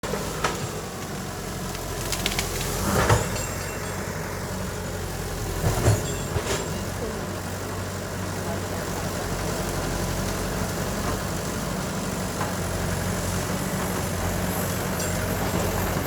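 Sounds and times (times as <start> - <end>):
heavy diesel engine running: 0.0 - 16.0.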